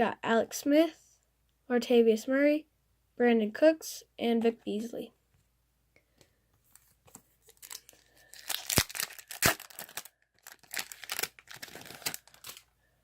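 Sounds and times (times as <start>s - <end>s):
foil wrapper tearing and crinkling: 7.5s - 12.7s
wrapper snapping: 7.5s - 12.7s.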